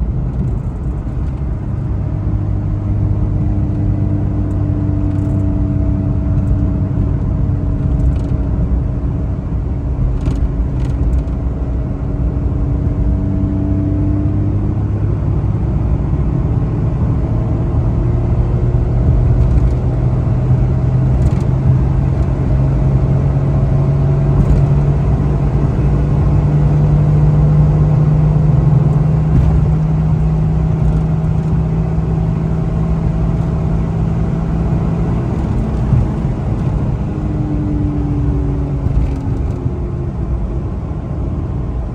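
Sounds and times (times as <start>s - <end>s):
road rumble: 0.0s - 41.9s
small van engine running: 18.4s - 41.1s.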